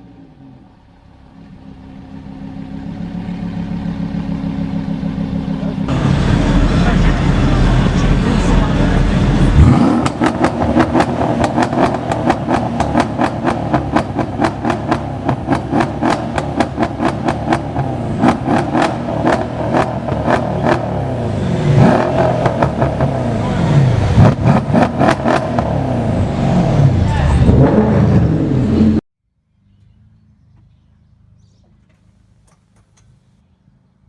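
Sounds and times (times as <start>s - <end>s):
engine revving: 0.0s - 29.0s
car exhaust crackling and popping: 0.7s - 26.2s.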